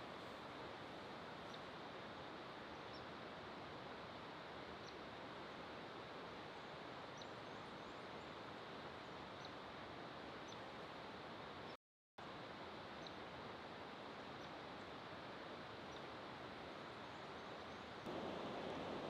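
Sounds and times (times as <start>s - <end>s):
rushing water hiss: 18.0s - 19.0s.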